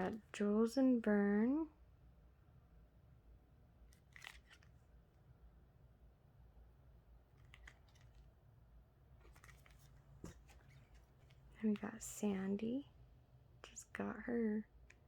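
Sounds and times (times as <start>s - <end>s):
low steady hum: 0.0s - 15.0s
soft clicks and rustles of handling: 3.9s - 4.9s, 7.3s - 8.4s, 9.2s - 12.2s.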